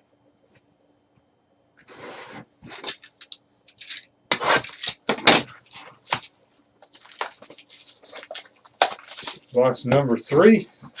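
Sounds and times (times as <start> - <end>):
cards and packaging handled: 2.7 - 9.6.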